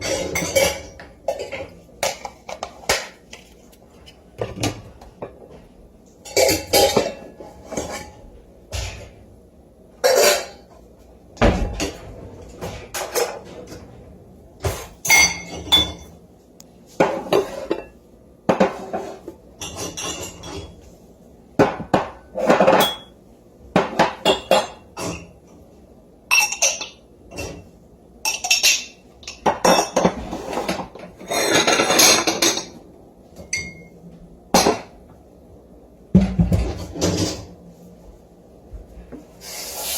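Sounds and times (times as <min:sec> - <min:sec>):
dishes and cutlery clanking: 0:00.0 - 0:03.2, 0:06.2 - 0:09.1, 0:10.0 - 0:10.7, 0:14.6 - 0:16.2, 0:17.0 - 0:20.8, 0:21.6 - 0:23.2, 0:23.8 - 0:25.4, 0:26.3 - 0:32.8, 0:33.4 - 0:33.9, 0:34.6 - 0:34.9.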